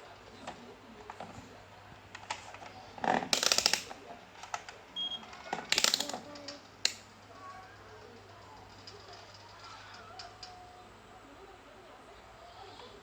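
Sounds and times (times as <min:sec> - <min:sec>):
rapid clicking and rattling: 0:02.1 - 0:04.8, 0:05.5 - 0:07.0
sharp click: 0:03.3 - 0:03.9, 0:05.7 - 0:07.1.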